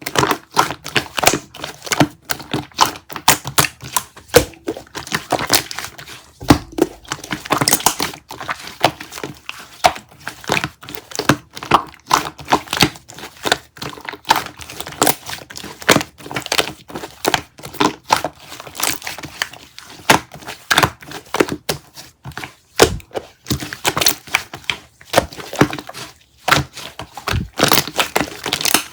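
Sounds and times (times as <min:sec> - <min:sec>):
candy crackling and popping: 0:02.9 - 0:09.0, 0:22.8 - 0:23.2, 0:26.4 - 0:28.9.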